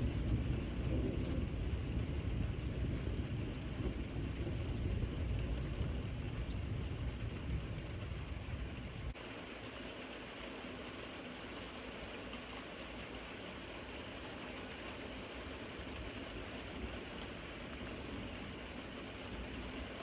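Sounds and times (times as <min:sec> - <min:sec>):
thunder rumbling: 0:00.0 - 0:09.2, 0:15.2 - 0:20.0
steady rain: 0:00.0 - 0:20.0.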